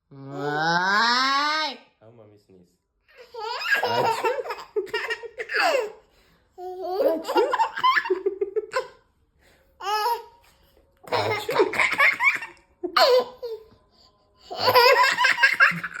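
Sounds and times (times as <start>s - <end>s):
baby laughing: 3.2s - 6.0s, 6.6s - 9.0s, 11.1s - 13.6s, 14.5s - 16.0s.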